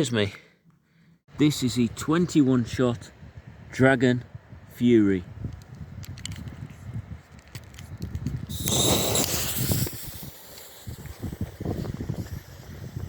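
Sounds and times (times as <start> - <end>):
firework fuse hissing: 8.5 - 13.0.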